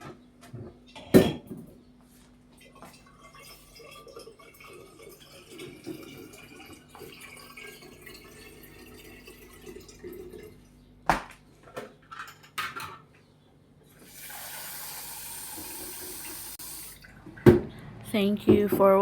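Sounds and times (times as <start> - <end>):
dishes clinking: 1.0 - 1.6
water dripping and trickling: 2.8 - 10.7.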